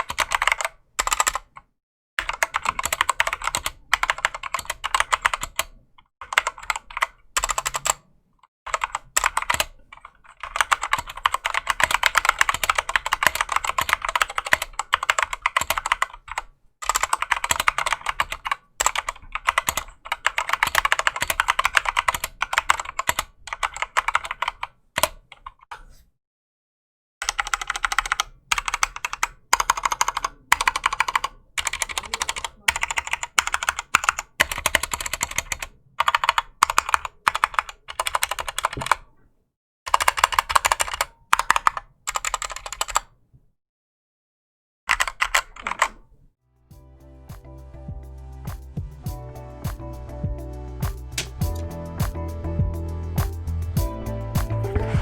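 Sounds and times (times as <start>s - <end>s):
mechanical keyboard key clacks: 51.1s - 51.7s.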